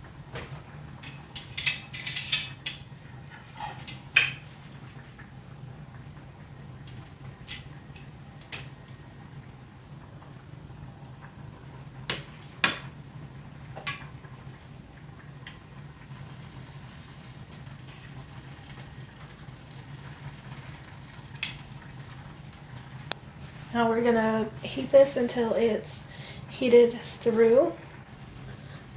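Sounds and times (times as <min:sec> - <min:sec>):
utensil clinking against skillet: 0:01.0 - 0:02.8.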